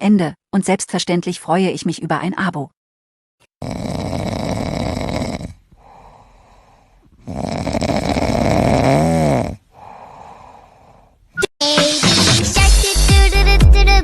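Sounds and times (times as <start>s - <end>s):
dog breathing: 3.6s - 11.2s
dog snoring: 3.6s - 11.2s.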